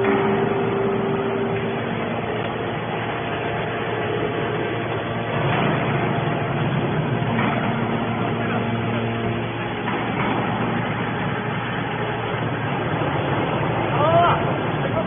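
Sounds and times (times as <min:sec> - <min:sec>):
hydraulic baler droning: 0:00.0 - 0:15.0.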